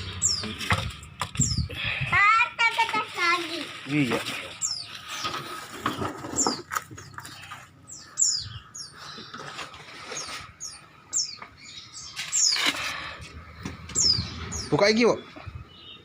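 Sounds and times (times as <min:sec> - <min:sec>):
bird chirping: 0:00.0 - 0:01.8, 0:04.4 - 0:16.0.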